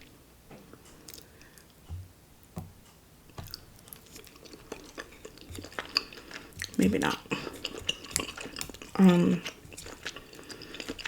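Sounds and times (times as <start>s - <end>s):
chewing close to microphone: 3.4s - 11.0s.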